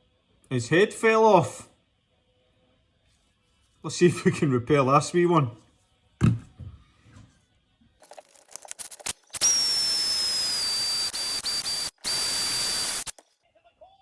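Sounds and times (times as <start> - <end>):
air hissing with high whistle: 9.4 - 13.1.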